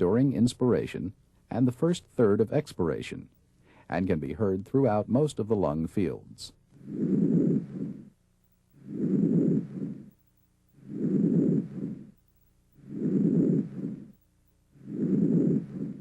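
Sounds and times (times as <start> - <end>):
soft breath sounds: 3.6 - 4.0, 6.8 - 16.0.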